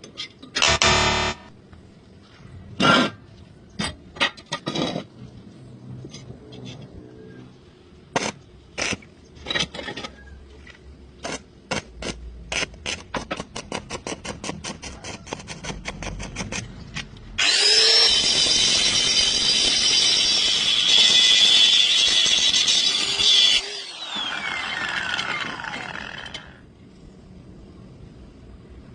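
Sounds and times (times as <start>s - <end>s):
power tool running: 0.6s - 1.5s, 17.4s - 26.6s.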